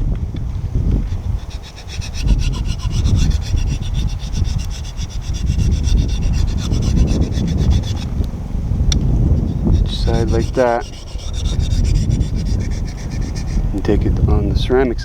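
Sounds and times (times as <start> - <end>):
blade grinding on whetstone: 1.0 - 8.3, 9.4 - 14.0.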